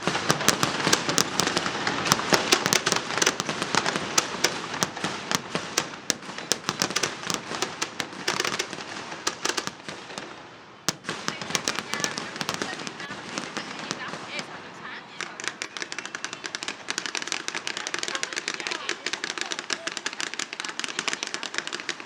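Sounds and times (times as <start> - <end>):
fireworks cracking and popping: 0.0 - 22.0.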